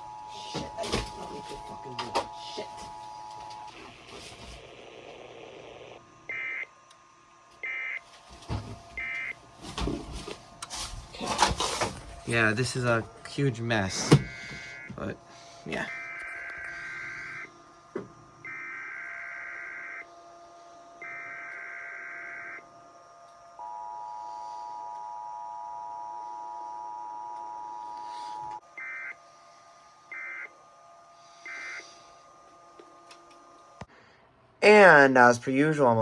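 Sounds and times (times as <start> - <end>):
faint steady tones: 12.2 - 33.9.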